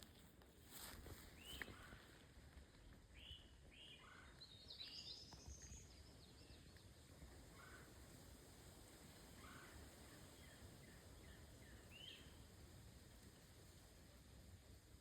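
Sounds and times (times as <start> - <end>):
songbird calls: 1.3 - 2.1, 3.1 - 6.8, 7.5 - 7.9, 9.4 - 12.4.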